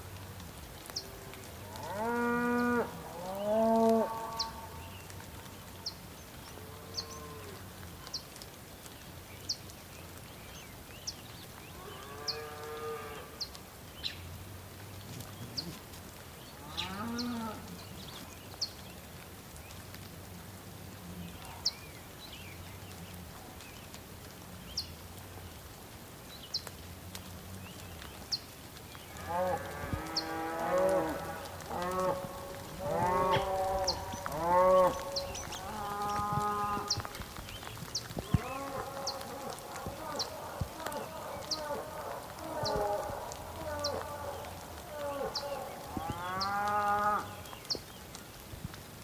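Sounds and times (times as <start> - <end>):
cattle mooing: 29.2 - 36.9.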